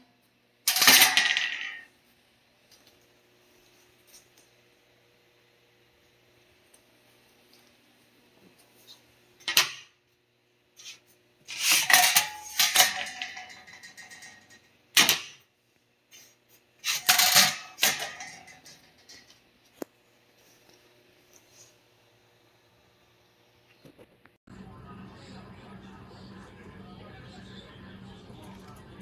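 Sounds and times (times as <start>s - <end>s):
metal pieces clattering and clanking: 11.5s - 14.7s, 16.8s - 19.4s
faint hum: 15.5s - 29.0s.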